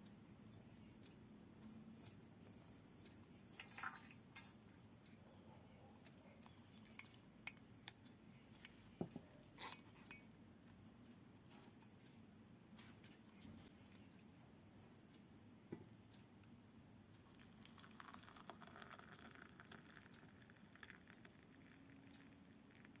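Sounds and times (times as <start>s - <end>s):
glassware and utensils clinking: 9.6s - 10.3s.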